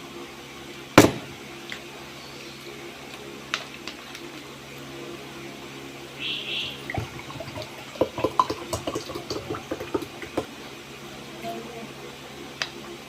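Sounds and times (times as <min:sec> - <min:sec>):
water pouring into a glass: 0:06.6 - 0:10.5.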